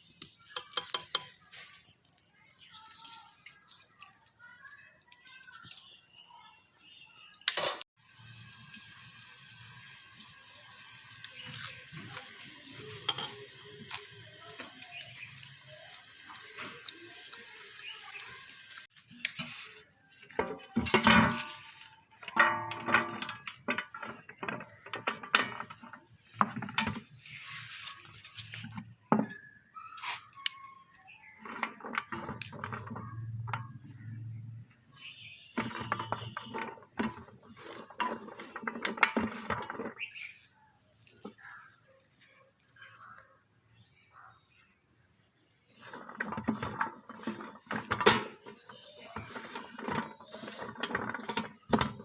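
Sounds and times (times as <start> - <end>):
fries sizzling in hot oil: 0.0 - 29.0, 35.1 - 41.7
dishes and utensils clinking: 0.2 - 1.8, 11.4 - 14.8, 20.2 - 27.2, 35.6 - 40.0.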